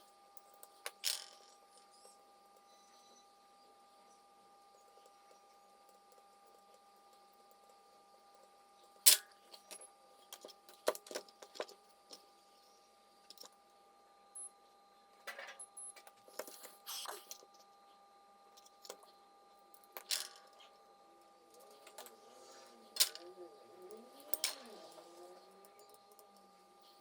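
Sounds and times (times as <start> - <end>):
faint electrical whine: 0.0 - 27.0
tools and small parts clicking: 22.9 - 27.0.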